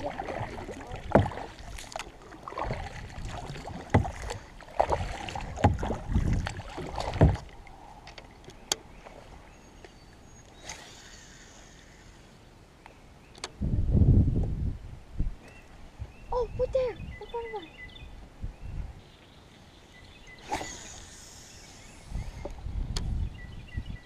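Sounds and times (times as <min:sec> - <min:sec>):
knocks on kayak hull: 0:03.9 - 0:04.3, 0:05.6 - 0:06.0, 0:07.0 - 0:07.4.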